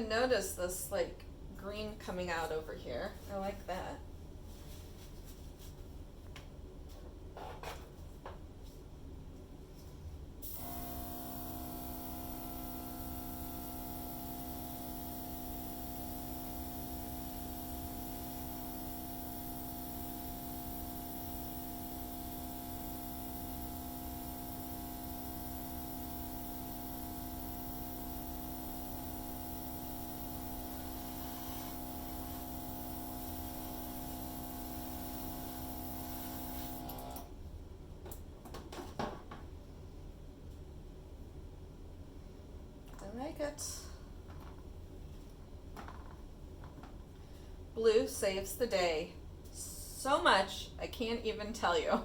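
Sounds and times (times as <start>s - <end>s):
hairdryer running: 10.6s - 37.3s.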